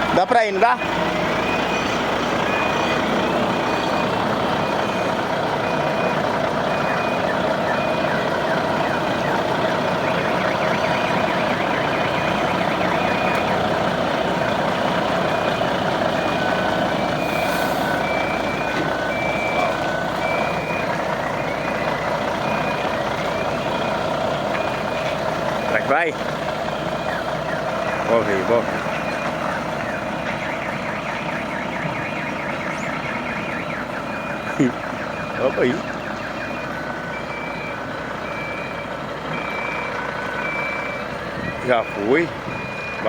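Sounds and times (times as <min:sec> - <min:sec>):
truck engine running: 0:00.0 - 0:43.0
reversing alarm beeps: 0:00.5 - 0:26.0, 0:26.8 - 0:43.0
low-pitched beeper: 0:15.3 - 0:24.0.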